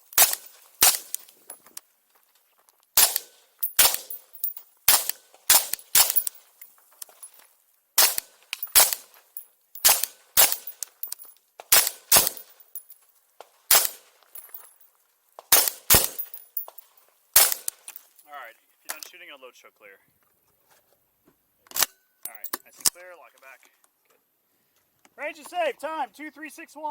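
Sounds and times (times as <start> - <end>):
rapid gunshots: 0.2 - 1.2, 3.0 - 4.1, 4.9 - 6.3, 8.8 - 9.0, 9.8 - 10.7, 11.7 - 12.4, 13.7 - 14.0, 15.5 - 16.3, 17.4 - 17.7.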